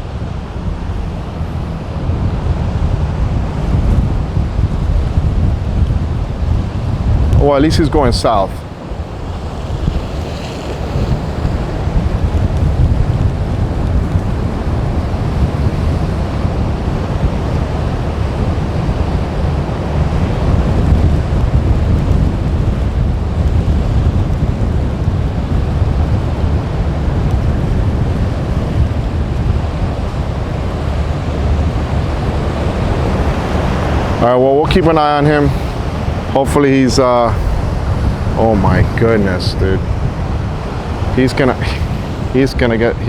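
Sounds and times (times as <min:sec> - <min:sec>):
surf rushing: 0:00.0 - 0:43.0
wind buffeting microphone: 0:00.0 - 0:43.0.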